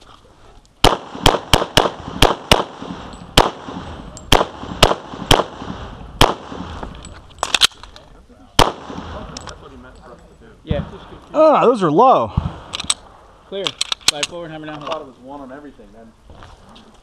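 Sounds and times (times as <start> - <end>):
pistol shots: 0.8 - 7.6, 8.6 - 9.3.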